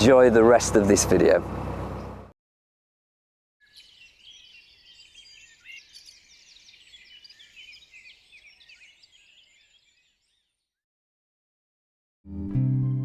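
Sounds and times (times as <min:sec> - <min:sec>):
songbirds chirping and whistling: 0:03.6 - 0:10.7.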